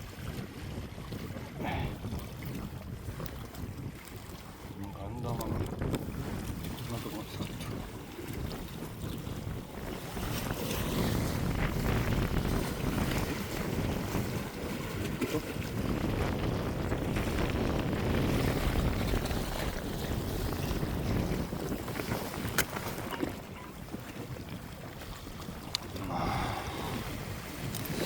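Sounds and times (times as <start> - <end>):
sea noise: 0.0 - 28.0
wind buffeting microphone: 0.0 - 28.0.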